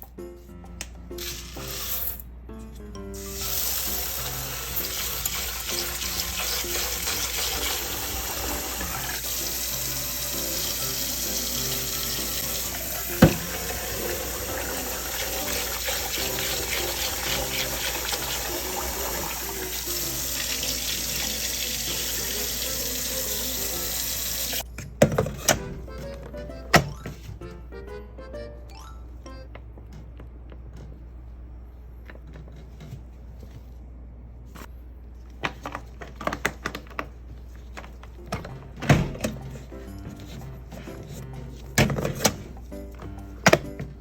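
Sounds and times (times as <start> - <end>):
water running: 3.2 - 24.6
background music with stepping melody: 25.4 - 29.7, 38.2 - 44.0.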